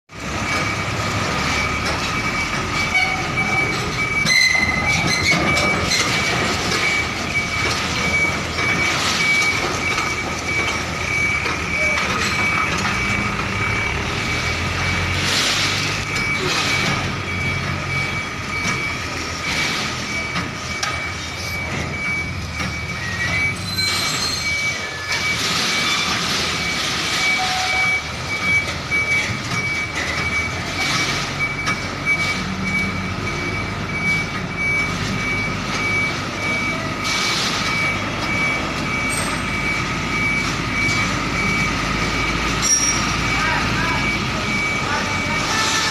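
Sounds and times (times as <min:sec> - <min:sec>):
truck engine running: 0:00.1 - 0:27.4.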